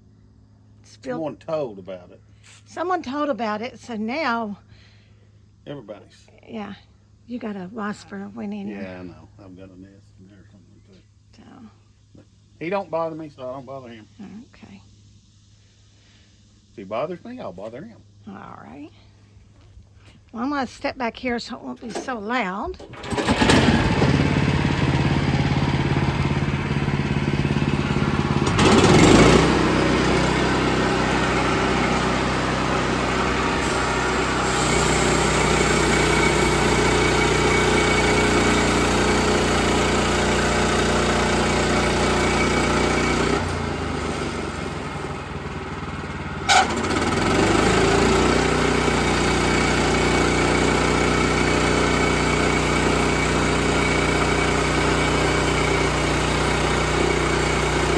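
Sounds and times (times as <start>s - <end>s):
sawmill engine running: 22.8s - 57.9s.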